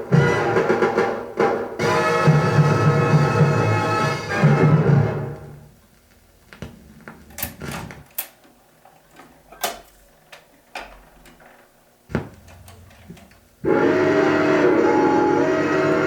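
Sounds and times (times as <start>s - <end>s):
tap-dance steps on hard floor: 12.1s - 12.4s.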